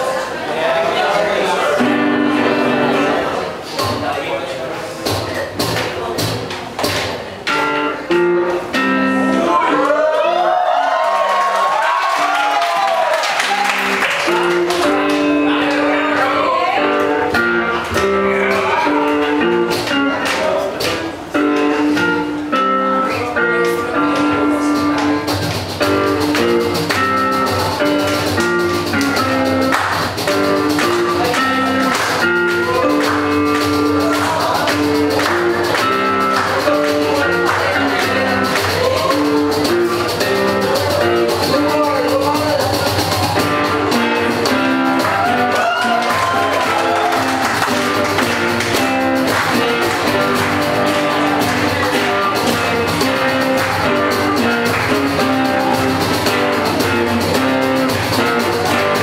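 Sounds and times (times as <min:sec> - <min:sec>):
guitar lines: 0:00.0 - 0:10.3, 0:12.3 - 0:59.0
bass guitar: 0:00.0 - 0:59.0
drums and cymbals: 0:17.1 - 0:59.0.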